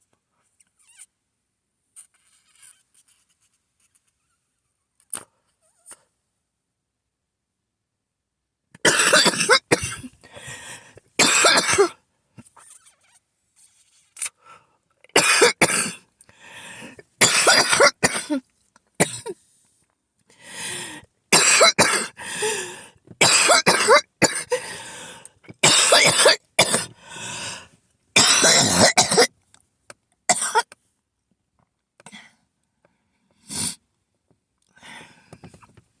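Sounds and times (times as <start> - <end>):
person coughing harshly: 8.8 - 10.1, 11.2 - 12.0, 15.2 - 16.0, 17.2 - 18.4, 19.0 - 19.4, 21.3 - 22.6, 23.2 - 24.8, 25.6 - 26.9, 28.2 - 29.3, 30.3 - 30.7.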